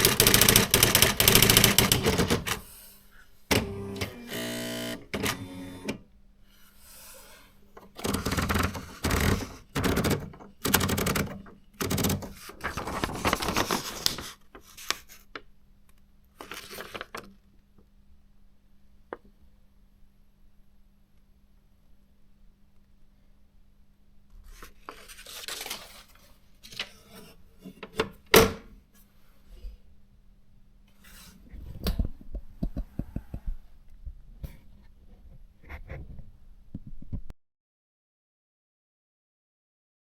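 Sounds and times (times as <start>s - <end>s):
typewriter keystrokes: 0.0s - 2.6s, 3.5s - 6.0s, 8.0s - 13.8s
typewriter motor whirr: 0.0s - 2.7s, 3.5s - 6.0s, 8.0s - 12.4s.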